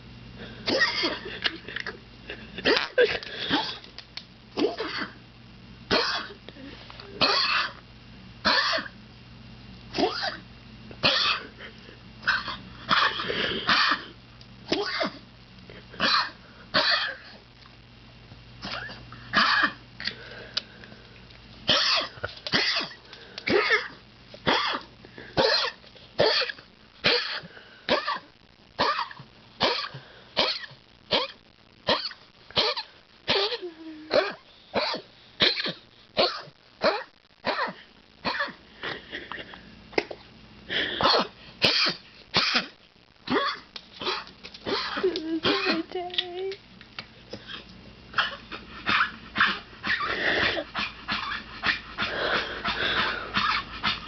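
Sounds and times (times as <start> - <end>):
dog coughing and hacking: 0.6 - 2.0, 2.6 - 3.9, 4.6 - 5.2, 5.9 - 6.4, 7.2 - 7.8, 8.4 - 9.0, 9.9 - 10.4, 11.0 - 11.6, 12.2 - 15.2, 15.9 - 17.4, 18.6 - 19.8, 21.7 - 45.9, 47.3 - 54.0.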